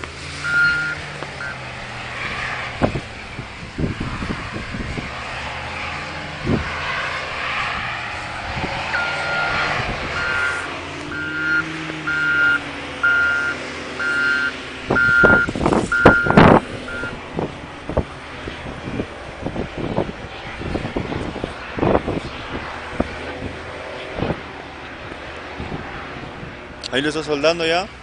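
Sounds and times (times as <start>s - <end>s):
engine running: 0.0s - 28.0s
backup alarm beeping: 0.4s - 1.6s, 10.2s - 17.2s.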